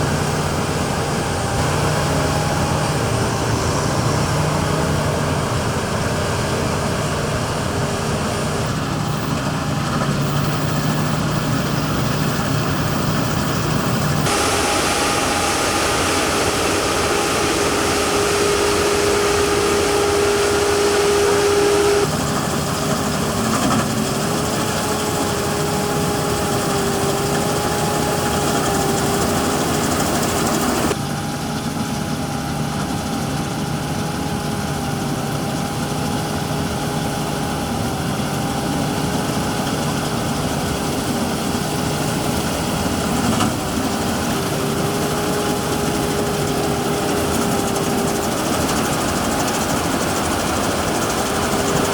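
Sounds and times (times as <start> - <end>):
combine harvester engine hum: 0.0 - 51.9.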